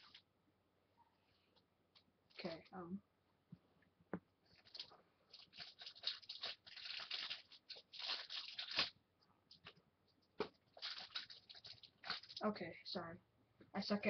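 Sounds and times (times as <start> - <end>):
plastic packaging tearing and crinkling: 4.5 - 9.0, 10.7 - 12.4.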